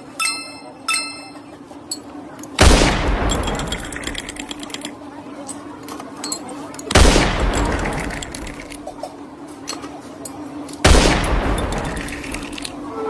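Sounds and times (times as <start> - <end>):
faint steady hum: 0.0 - 13.0
loud explosion blasts: 2.6 - 4.0, 7.0 - 8.3, 10.9 - 12.6.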